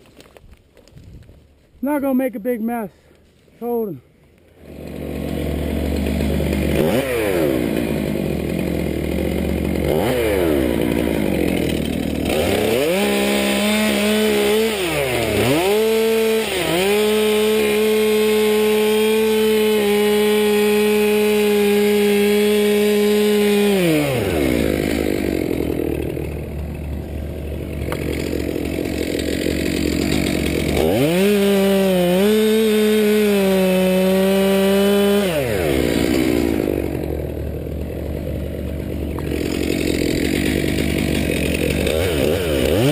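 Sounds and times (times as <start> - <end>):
chainsaw cutting wood: 4.4 - 42.9.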